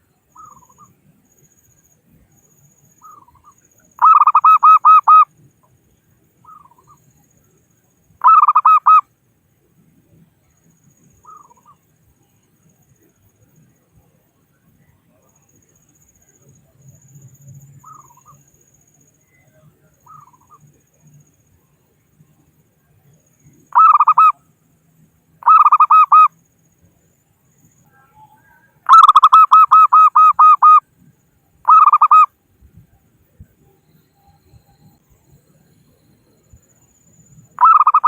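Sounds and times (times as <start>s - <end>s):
dove cooing: 3.0s - 5.2s, 8.2s - 9.0s, 17.8s - 18.4s, 23.7s - 24.3s, 25.4s - 26.3s, 28.8s - 30.8s, 31.7s - 32.3s, 37.6s - 38.0s.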